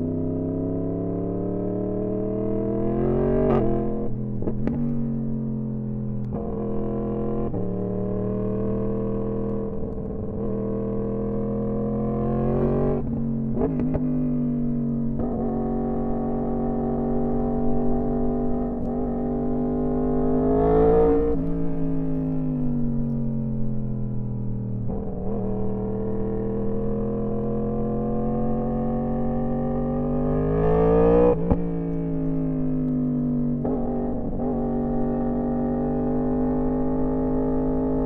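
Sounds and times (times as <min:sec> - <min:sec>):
motorcycle engine revving: 0:15.1 - 0:38.0.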